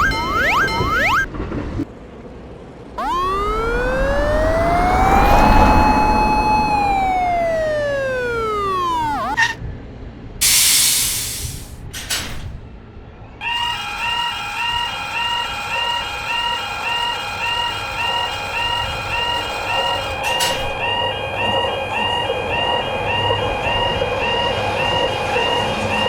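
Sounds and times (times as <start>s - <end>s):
siren-like whine: 0.0s - 1.3s, 3.0s - 9.6s, 10.4s - 11.8s
hiss bursts: 10.4s - 11.8s.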